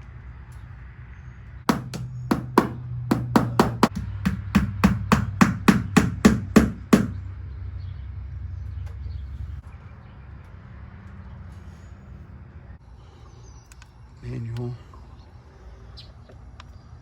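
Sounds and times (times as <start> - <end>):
sharp percussive beat: 1.7 - 7.2.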